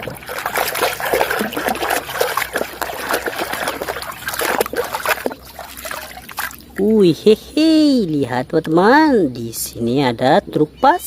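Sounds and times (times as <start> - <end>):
water trickling and splashing: 0.0 - 7.4.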